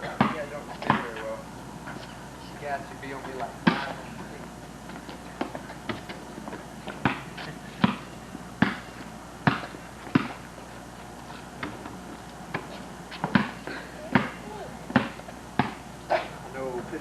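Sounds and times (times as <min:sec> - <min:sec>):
basketball bouncing: 0:00.2 - 0:01.2, 0:08.6 - 0:10.4, 0:12.5 - 0:15.8.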